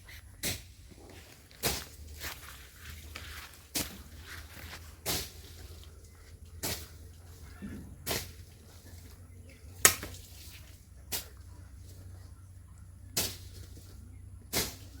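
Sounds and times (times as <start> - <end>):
blade swishing through grass: 0.4 - 5.8.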